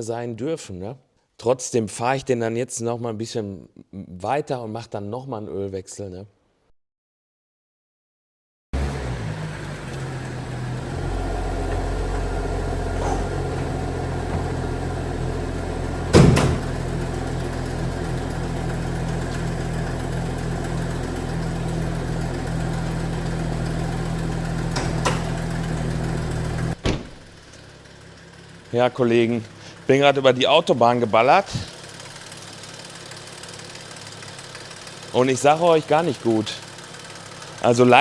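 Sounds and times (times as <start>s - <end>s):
car engine running: 8.8s - 38.0s.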